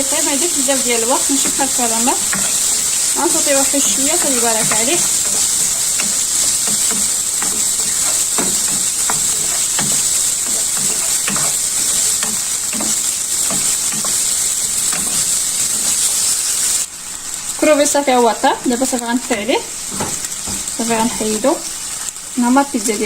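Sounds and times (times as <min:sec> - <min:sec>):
shrimp sizzling in oil: 0:00.0 - 0:23.0
stirring clicks and scrapes: 0:00.9 - 0:16.5.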